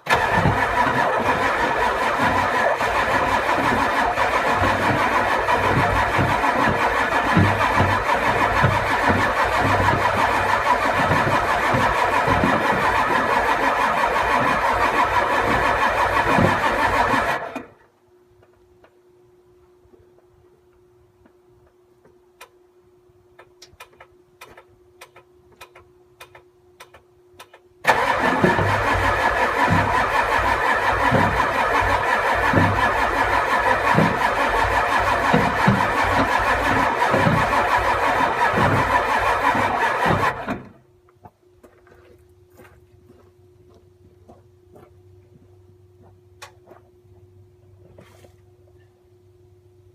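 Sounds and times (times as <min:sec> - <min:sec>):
diesel engine cranking on starter: 0:00.0 - 0:17.8, 0:27.8 - 0:40.8
steady low hum: 0:40.6 - 0:49.9.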